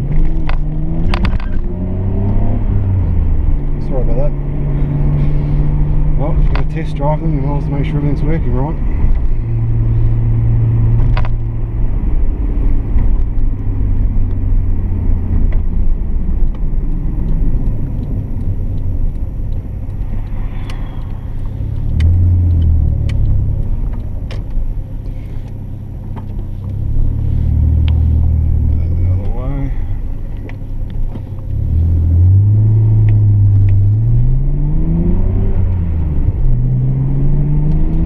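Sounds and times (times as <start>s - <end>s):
car engine drone: 0.0s - 38.0s
road noise: 0.0s - 38.0s
sharp clicks: 16.4s - 26.8s.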